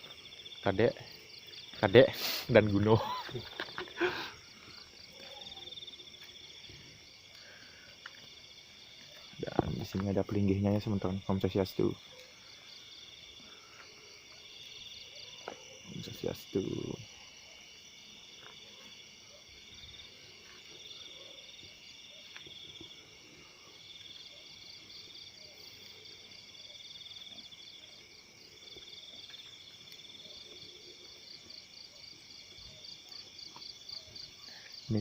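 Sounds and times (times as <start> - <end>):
insect rapid pulsing trill: 0.0 - 18.2
crickets trilling: 0.0 - 35.0.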